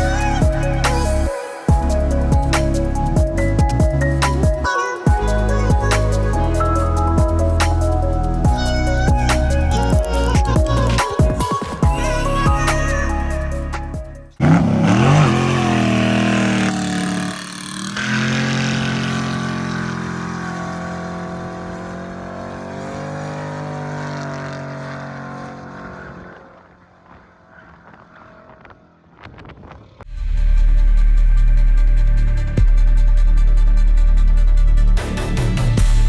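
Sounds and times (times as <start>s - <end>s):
engine revving hard: 14.4s - 26.4s.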